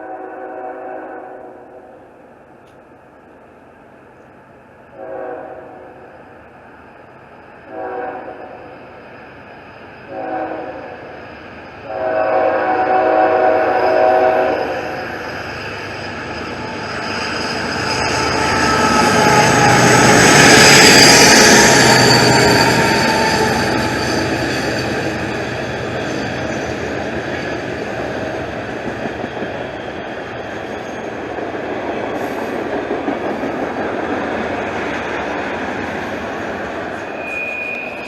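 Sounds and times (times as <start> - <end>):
locomotive horn blasts: 0.0 - 1.6, 5.0 - 5.8, 7.7 - 8.6, 10.1 - 11.0, 11.8 - 15.0
train rumble: 0.0 - 38.0.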